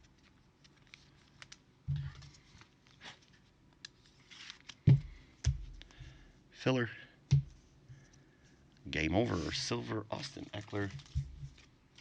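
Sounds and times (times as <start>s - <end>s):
cards clicking and rustling: 0.0s - 6.0s.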